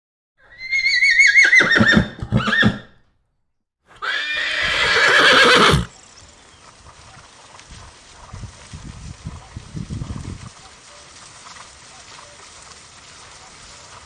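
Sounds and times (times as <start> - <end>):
harsh animal call: 0.5 - 2.9.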